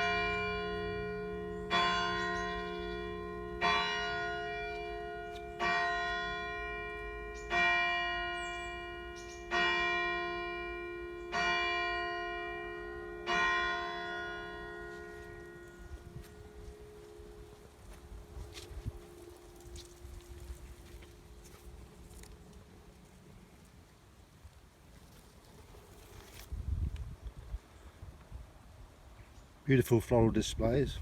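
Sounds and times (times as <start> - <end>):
church bell striking: 0.0 - 23.2.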